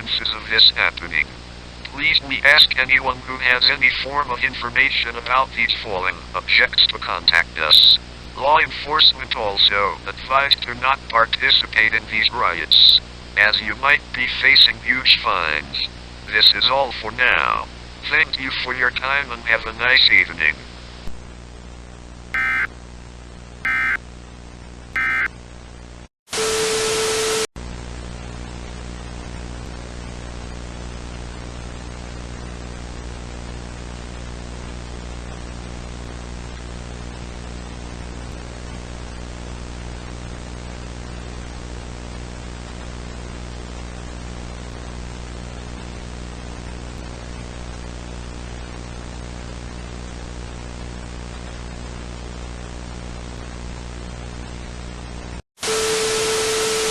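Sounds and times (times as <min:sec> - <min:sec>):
digital data tone bursts: 0:22.4 - 0:22.7, 0:23.7 - 0:24.0, 0:25.0 - 0:25.3
electrical hum: 0:22.4 - 0:22.7, 0:23.7 - 0:24.0, 0:25.0 - 0:25.3
static burst with low tone: 0:22.4 - 0:22.7, 0:23.7 - 0:24.0, 0:25.0 - 0:25.3.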